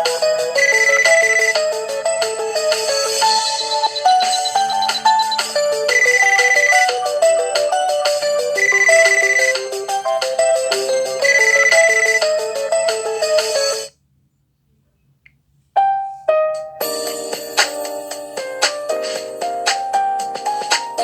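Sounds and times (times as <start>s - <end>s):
phone ringtone melody: 0.0s - 13.9s.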